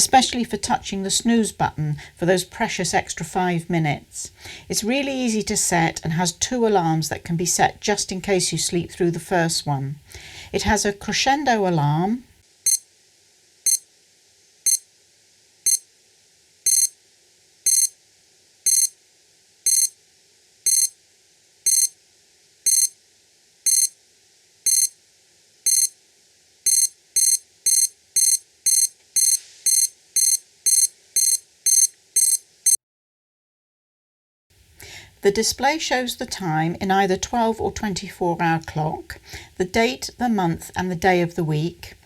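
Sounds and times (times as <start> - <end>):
alarm clock beeping: 16.7 - 16.9, 17.7 - 17.9, 18.7 - 18.9, 19.7 - 19.9, 20.7 - 20.9, 21.7 - 21.9, 22.7 - 22.9, 23.7 - 23.9, 24.7 - 24.9, 25.7 - 25.9, 26.7 - 32.8.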